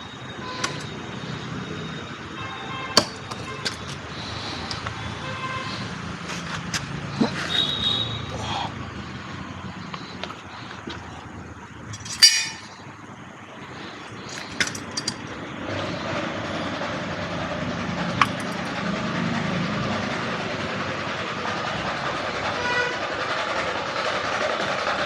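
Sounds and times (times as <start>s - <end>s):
metal jack clanking: 0.6s - 1.0s, 11.8s - 12.9s, 14.2s - 15.3s, 18.2s - 18.8s.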